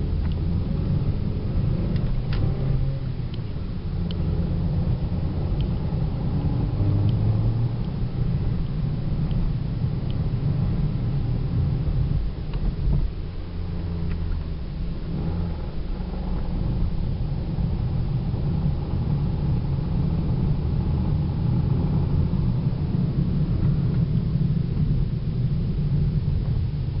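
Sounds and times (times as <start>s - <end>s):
car engine rumble from inside: 0.0s - 27.0s.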